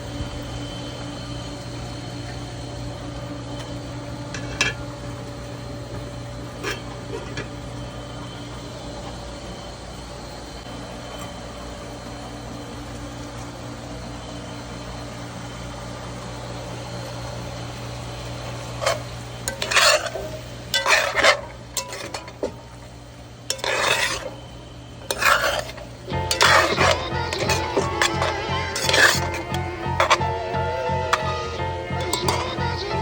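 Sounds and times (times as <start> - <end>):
utensil scraping a pan: 4.3 - 4.8, 6.5 - 7.5, 18.7 - 22.8, 23.5 - 33.0
food sizzling in a pan: 18.8 - 33.0.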